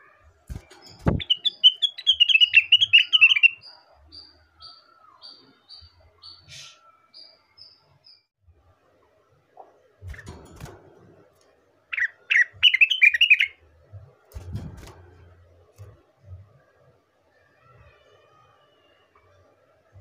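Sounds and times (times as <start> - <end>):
bird singing: 0.6 - 8.3, 11.9 - 13.6.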